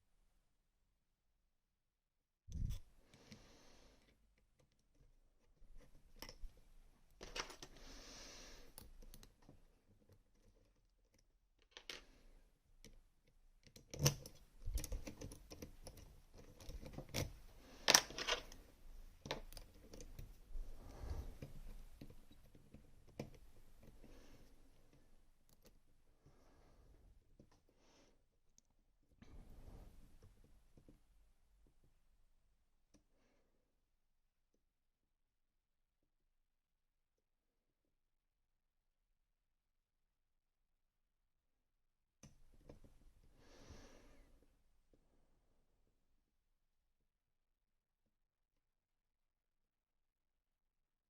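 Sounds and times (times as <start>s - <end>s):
lock picking clicks and scrapes: 2.5s - 3.3s, 4.4s - 6.6s, 12.8s - 18.6s, 19.2s - 20.4s.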